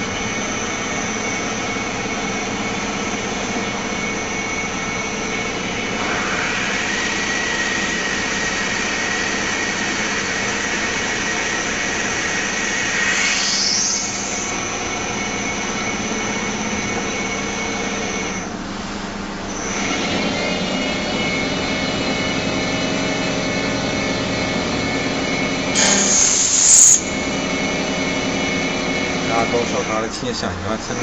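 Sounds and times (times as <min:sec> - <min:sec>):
lathe whine: 0:00.0 - 0:31.0
loud hiss: 0:25.8 - 0:27.1.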